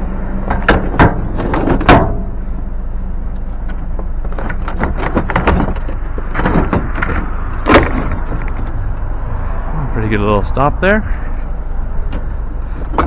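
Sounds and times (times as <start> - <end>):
steady low hum: 0.0 - 13.0
scrap items knocking and clattering: 0.5 - 2.3, 4.3 - 8.7.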